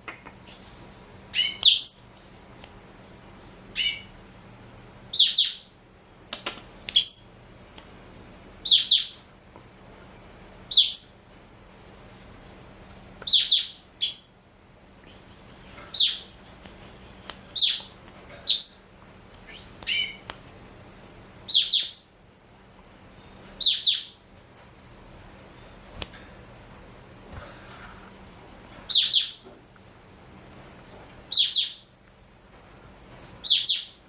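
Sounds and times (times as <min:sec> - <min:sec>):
canary chirping: 0:00.5 - 0:02.5, 0:03.8 - 0:04.2, 0:05.1 - 0:05.7, 0:07.0 - 0:07.4, 0:08.6 - 0:09.2, 0:10.7 - 0:11.3, 0:13.2 - 0:14.5, 0:15.1 - 0:17.9, 0:18.5 - 0:19.0, 0:21.4 - 0:22.2, 0:23.6 - 0:24.2, 0:28.9 - 0:29.4, 0:30.7 - 0:31.9, 0:33.4 - 0:34.0.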